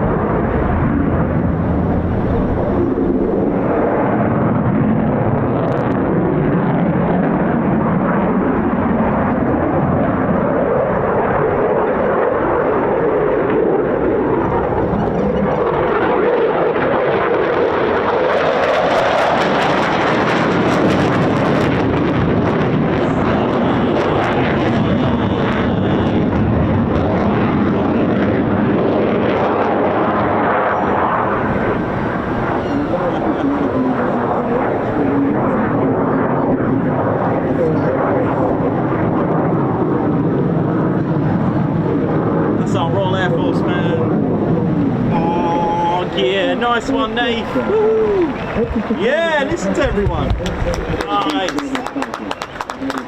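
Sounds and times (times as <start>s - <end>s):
loud jet roar: 0.0s - 53.0s.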